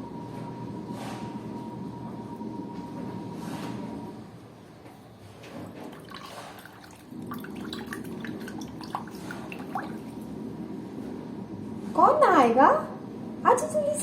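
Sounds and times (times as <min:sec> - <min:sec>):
low steady hum: 0:05.5 - 0:14.0
water splashing and dripping: 0:05.7 - 0:10.3.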